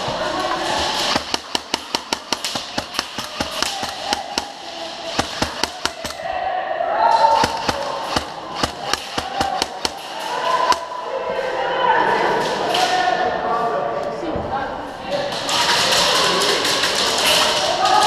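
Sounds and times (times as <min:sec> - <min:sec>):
airsoft guns firing: 0:00.0 - 0:06.4, 0:07.1 - 0:10.9
background hubbub: 0:00.0 - 0:18.0.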